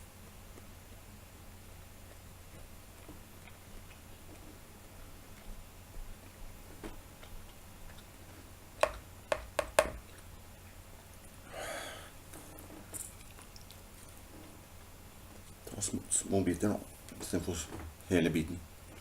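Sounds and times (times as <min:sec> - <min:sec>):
chewing mushrooms: 0:01.5 - 0:08.8, 0:12.2 - 0:17.2
breathy exhale: 0:11.4 - 0:12.2.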